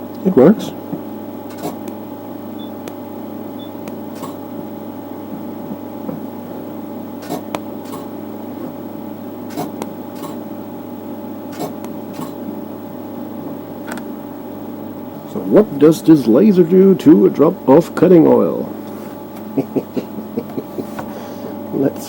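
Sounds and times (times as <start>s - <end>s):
laser unit humming: 0.0s - 22.0s
sharp snaps of laser pulses: 1.5s - 2.0s, 7.2s - 8.1s.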